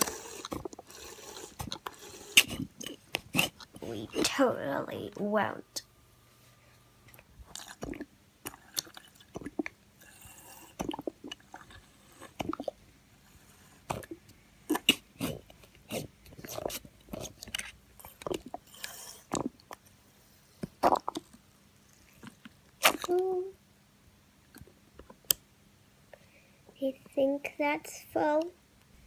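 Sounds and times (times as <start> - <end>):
plastic squeeze bottle squelching: 0.0 - 5.1, 7.1 - 19.8.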